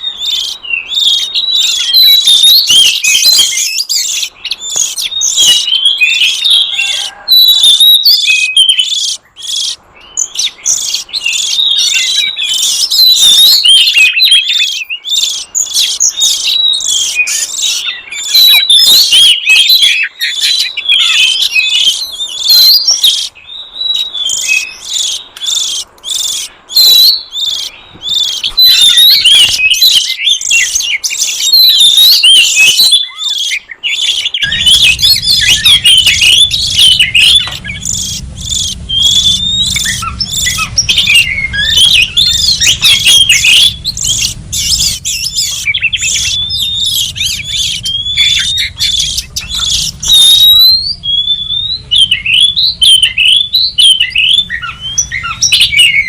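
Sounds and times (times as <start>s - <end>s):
bird song whistles and chirps: 0.0s - 56.0s
low hum: 34.4s - 52.8s.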